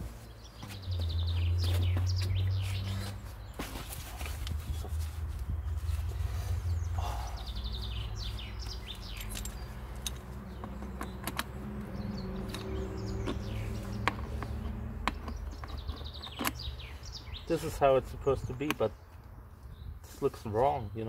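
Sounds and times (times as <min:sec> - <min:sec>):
small birds chirping: 0:00.0 - 0:21.0
steady low rumble: 0:00.8 - 0:10.6
sharp clicks: 0:08.6 - 0:16.7.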